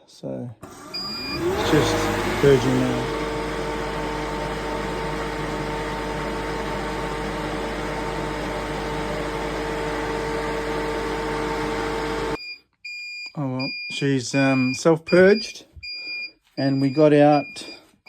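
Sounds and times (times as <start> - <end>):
machine compressor hum: 0.7 - 12.4.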